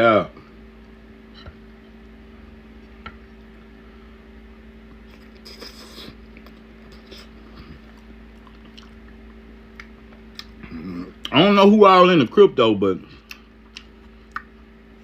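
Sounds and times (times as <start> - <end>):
low electrical hum: 0.0 - 15.0
person chewing: 4.9 - 11.4, 13.2 - 14.6.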